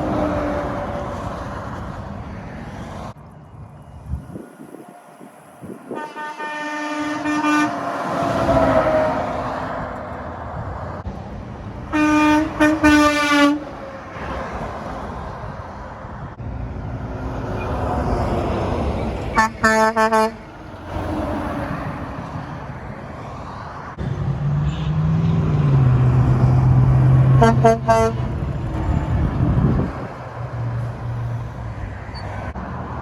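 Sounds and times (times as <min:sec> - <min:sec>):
road traffic: 0:00.0 - 0:33.0
truck horns honking: 0:04.8 - 0:09.9, 0:11.8 - 0:14.6, 0:17.6 - 0:22.0, 0:24.5 - 0:25.6, 0:27.0 - 0:31.5.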